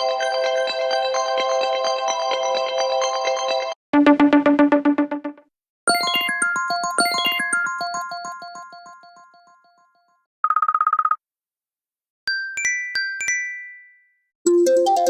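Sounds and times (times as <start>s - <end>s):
electronic ringtone melody: 5.9s - 9.9s.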